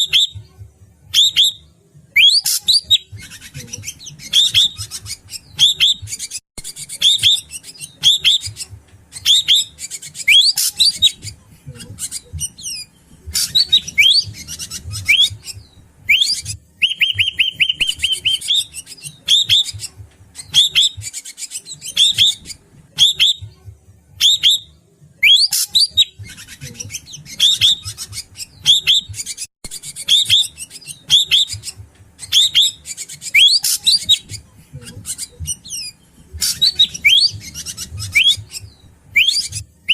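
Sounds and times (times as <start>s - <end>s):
bird chirping and whistling: 0.0s - 0.4s, 1.1s - 23.5s, 24.2s - 39.9s
bird trill: 12.0s - 23.5s, 24.2s - 34.2s, 35.1s - 39.9s.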